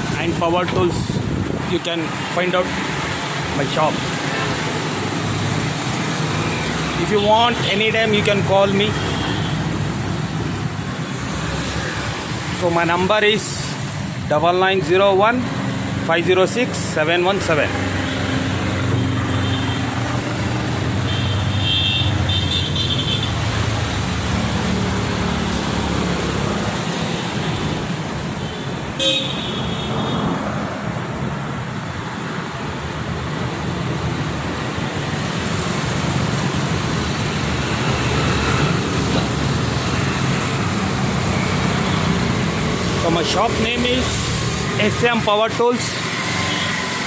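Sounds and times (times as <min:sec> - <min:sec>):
road traffic noise: 0:00.0 - 0:47.0
car horn toots: 0:29.0 - 0:30.3.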